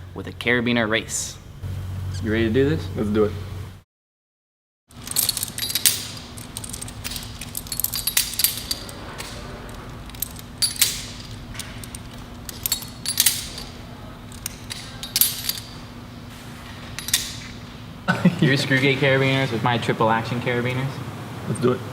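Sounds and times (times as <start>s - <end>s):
steady low hum: 0.0s - 3.8s, 4.9s - 21.4s
carabiner gates snapping shut: 4.9s - 16.0s, 16.7s - 17.6s
metal clinking: 4.9s - 18.0s.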